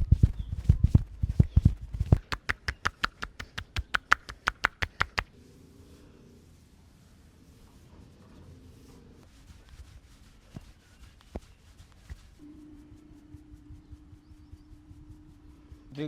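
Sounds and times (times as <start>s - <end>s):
hands slapping on body: 0.6s - 5.3s.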